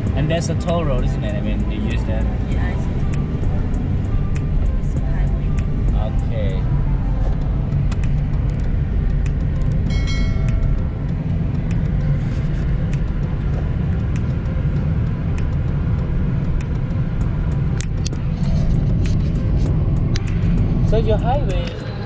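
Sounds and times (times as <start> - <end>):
car engine and tyres rumbling: 0.0 - 22.0
high ringing tone: 9.9 - 10.9.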